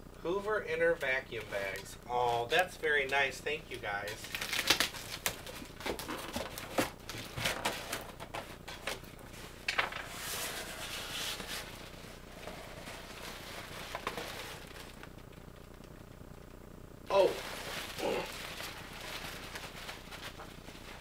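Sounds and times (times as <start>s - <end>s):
packaging rustling: 3.9s - 16.0s, 17.1s - 21.0s
packaging crinkling: 3.9s - 16.2s, 17.1s - 21.0s.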